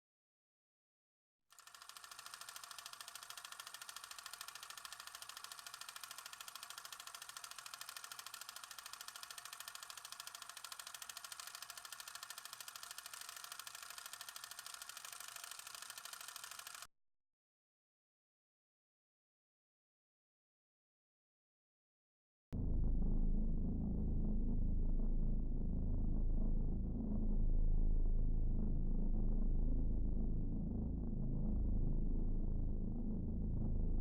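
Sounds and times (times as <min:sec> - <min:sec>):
film projector clicking: 0:01.6 - 0:16.8.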